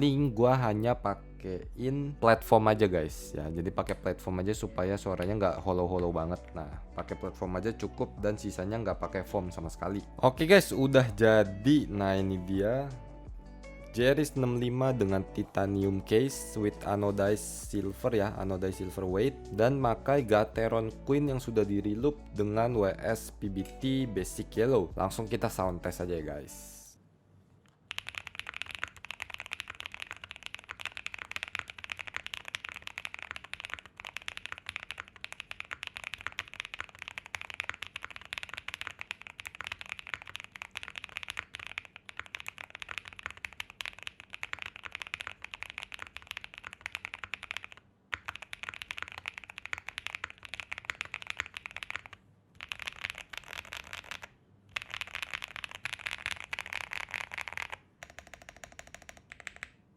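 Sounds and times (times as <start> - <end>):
fast mechanical keyboard typing: 27.9 - 59.8.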